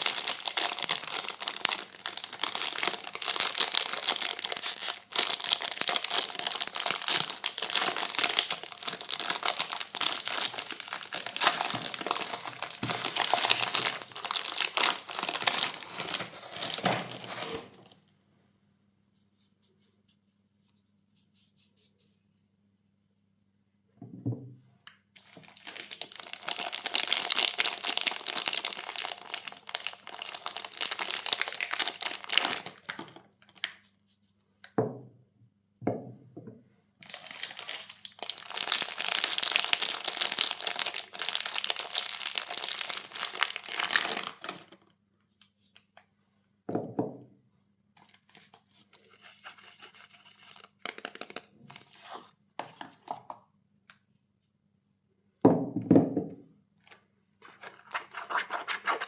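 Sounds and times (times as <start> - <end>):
wrappers crinkling and tearing: 0.0 - 18.0, 25.2 - 33.6, 37.0 - 44.8.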